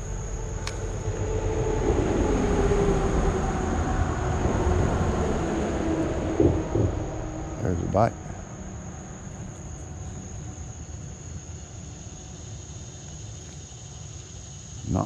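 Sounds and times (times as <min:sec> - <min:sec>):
vehicle passing by: 0:00.4 - 0:10.0.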